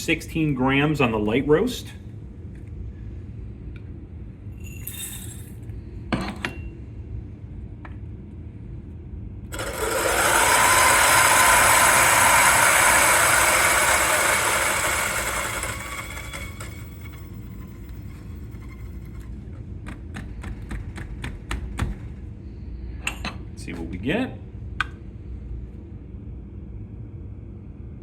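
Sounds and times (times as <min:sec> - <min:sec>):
coffee grinder motor whine: 0:09.5 - 0:19.3.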